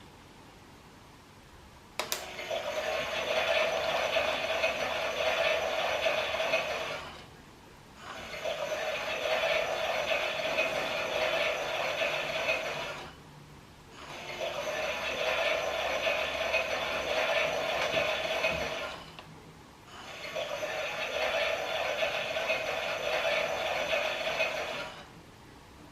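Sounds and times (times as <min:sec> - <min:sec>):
toy washing machine drum rattling: 0:02.3 - 0:07.0, 0:08.2 - 0:13.0, 0:14.1 - 0:19.0, 0:20.1 - 0:24.9.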